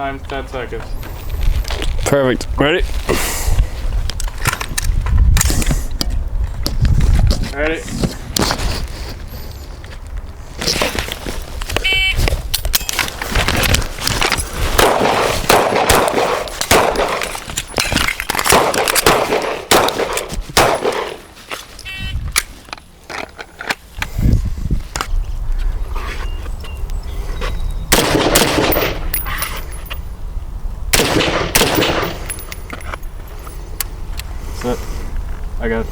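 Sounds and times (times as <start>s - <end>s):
suppressed rifle shots: 14.8s - 17.3s, 18.4s - 21.2s, 27.9s - 29.2s, 30.9s - 32.4s.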